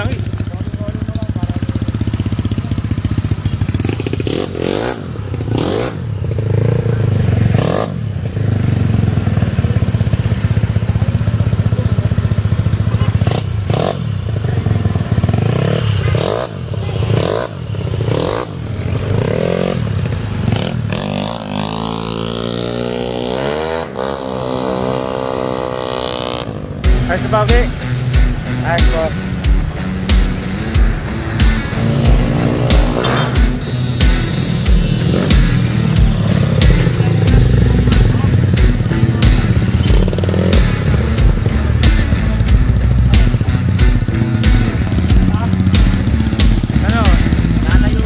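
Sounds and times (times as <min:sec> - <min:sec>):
scooter engine revving: 0:00.0 - 0:48.0.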